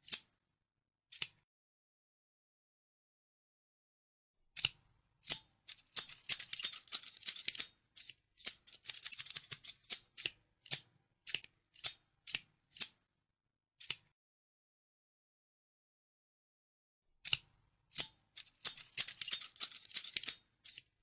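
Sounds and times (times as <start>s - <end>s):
scissors snipping: 0.0s - 0.3s, 1.1s - 1.4s, 4.6s - 13.0s, 13.8s - 14.1s, 17.2s - 20.9s.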